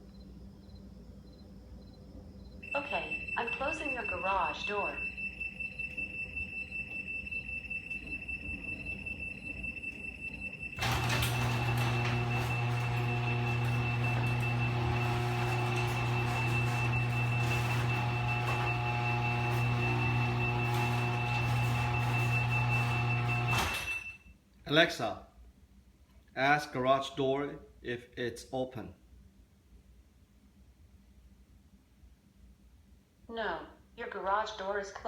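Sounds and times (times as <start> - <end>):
warning beeps: 2.6 - 10.8
garage door motor humming: 7.8 - 24.1
garage door rattling: 10.8 - 24.1.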